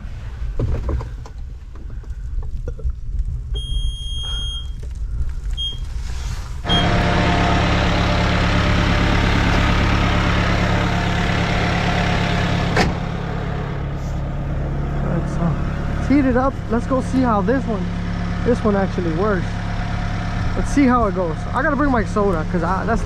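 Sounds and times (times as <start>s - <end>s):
short high beeps: 3.6s - 4.8s, 6.7s - 7.0s
diesel engine idling: 5.6s - 23.0s.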